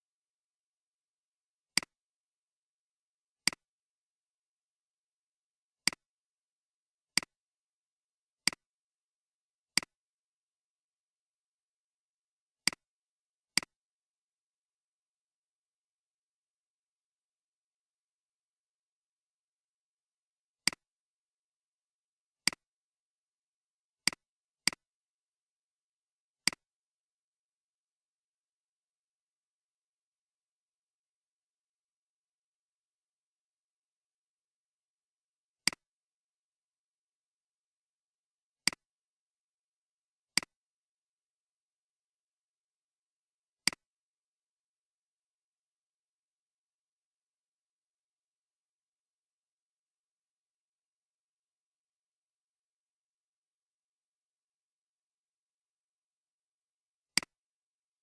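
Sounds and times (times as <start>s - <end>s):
computer mouse clicks: 3.4s - 3.6s, 26.5s - 26.7s, 35.6s - 35.9s, 38.7s - 38.9s, 43.7s - 43.9s.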